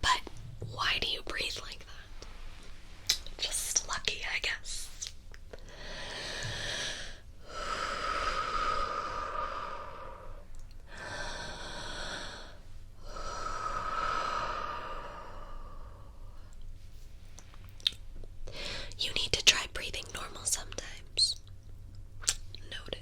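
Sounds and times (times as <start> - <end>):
slow deep breaths: 5.6 - 17.4, 18.4 - 19.0.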